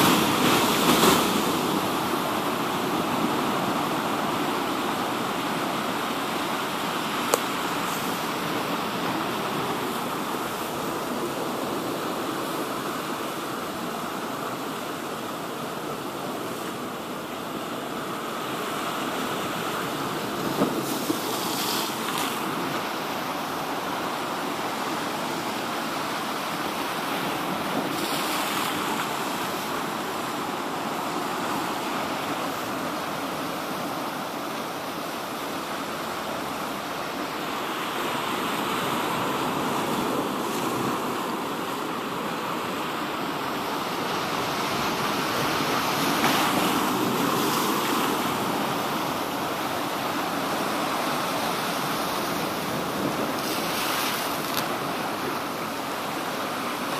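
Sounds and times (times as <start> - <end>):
sea surf washing ashore: 0.0 - 56.9
water splashes: 43.8 - 56.9.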